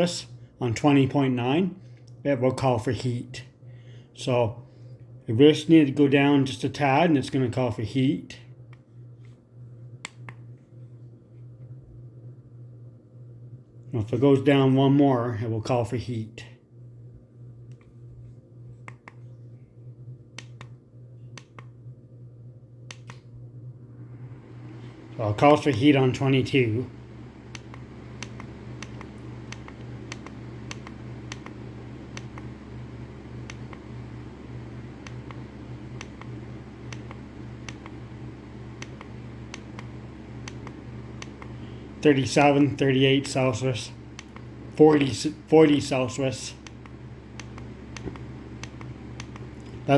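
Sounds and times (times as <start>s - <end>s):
low hum: 0.0s - 49.9s.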